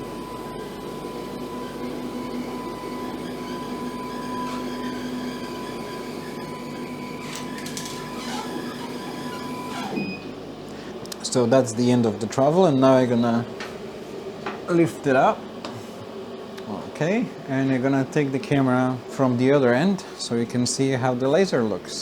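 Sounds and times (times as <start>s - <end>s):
stepper motors whining: 0.0s - 10.3s.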